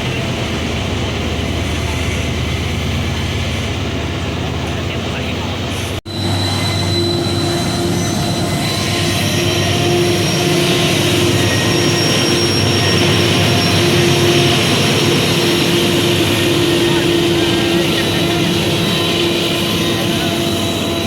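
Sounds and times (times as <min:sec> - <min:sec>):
train passing with loud rumble: 0:00.0 - 0:21.0
high whining tones: 0:06.0 - 0:21.0.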